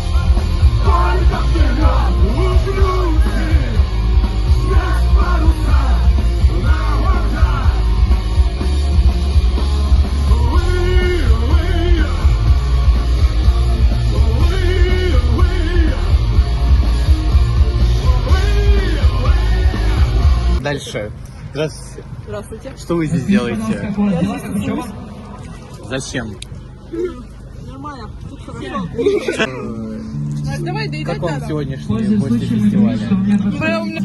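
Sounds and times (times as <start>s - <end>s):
shouted singing: 0.0s - 8.6s, 10.2s - 16.4s
punk rock band playing: 0.0s - 20.6s.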